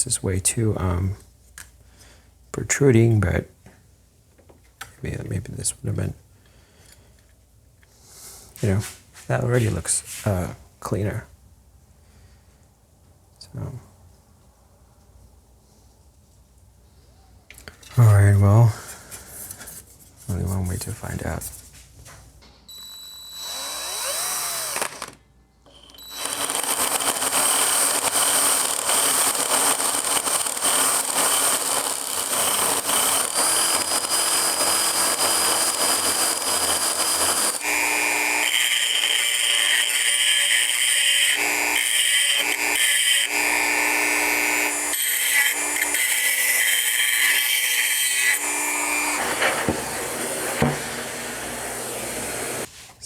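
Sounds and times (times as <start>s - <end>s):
handheld power tool running: 22.7s - 52.7s.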